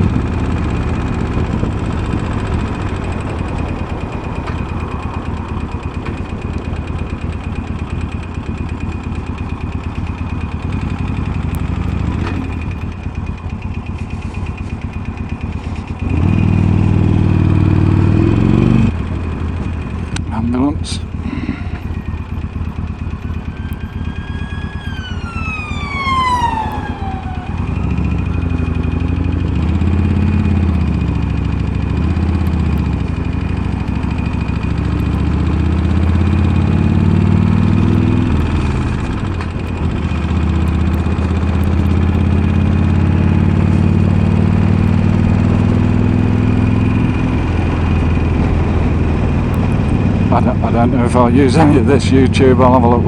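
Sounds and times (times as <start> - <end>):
siren: 0.0 - 16.6, 21.1 - 31.2, 36.0 - 43.4
motorcycle engine revving: 0.0 - 53.0.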